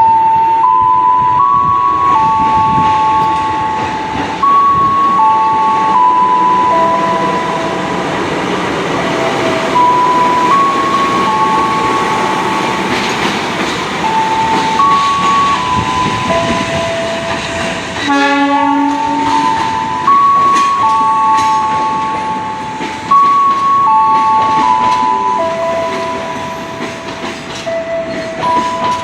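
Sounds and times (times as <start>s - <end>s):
slow tune of held notes: 0.0s - 8.3s, 9.0s - 13.4s
train passing rumble: 0.4s - 29.0s
train horn blast: 18.0s - 19.4s.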